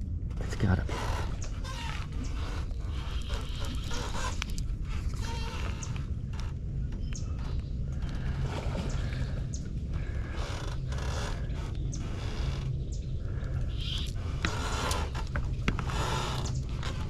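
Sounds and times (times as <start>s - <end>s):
wind rumbling on microphone: 0.0s - 17.0s.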